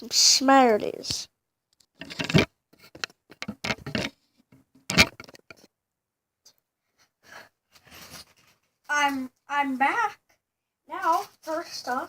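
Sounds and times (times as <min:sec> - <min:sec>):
clicks and rustles of handling: 0:01.0 - 0:05.7, 0:11.0 - 0:12.0.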